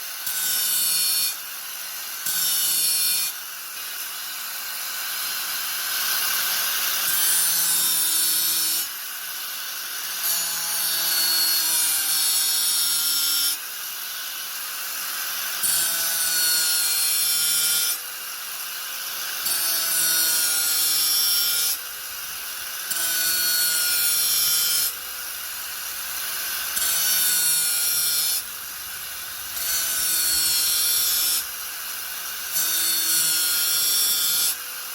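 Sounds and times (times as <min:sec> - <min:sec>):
grinding hiss: 0:00.0 - 0:34.9
angle grinder whine: 0:19.3 - 0:34.6.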